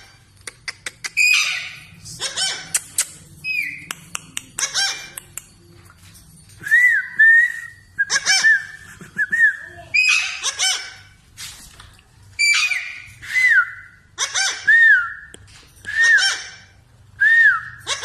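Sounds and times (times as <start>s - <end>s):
parrot squawking and whistling: 1.2s - 2.8s, 6.9s - 8.8s, 9.6s - 11.0s, 12.4s - 15.3s, 15.9s - 16.7s.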